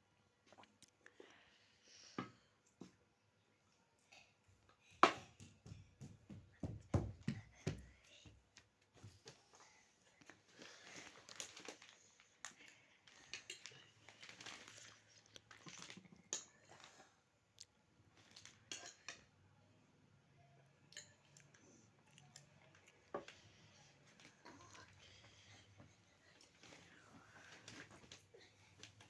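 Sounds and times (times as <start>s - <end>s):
small clicks and crunches: 10.2s - 17.0s, 17.6s - 19.0s.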